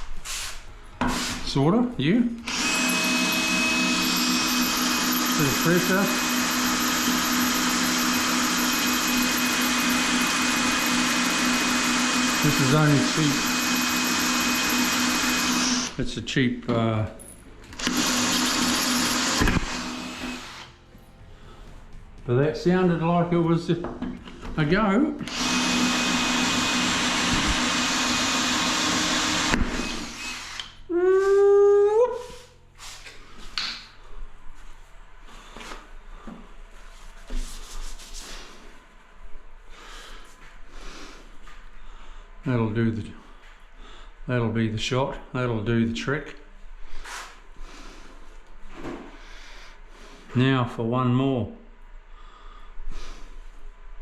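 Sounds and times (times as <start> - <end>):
electric drill boring into tile: 2.4 - 16.0, 17.8 - 20.8, 25.2 - 30.8.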